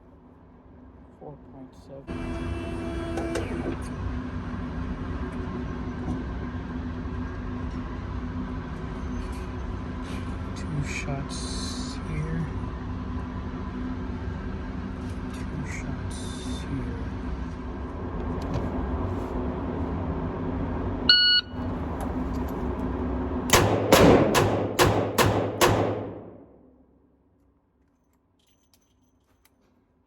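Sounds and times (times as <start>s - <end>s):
steady background hum: 0.0s - 30.0s
shot timer beep: 21.1s - 21.6s.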